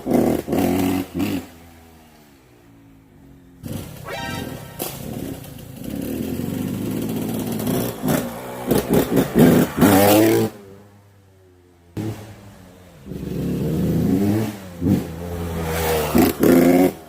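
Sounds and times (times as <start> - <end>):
two-stroke motorcycle engine revving: 0.0 - 1.8, 4.8 - 10.6, 13.0 - 17.0.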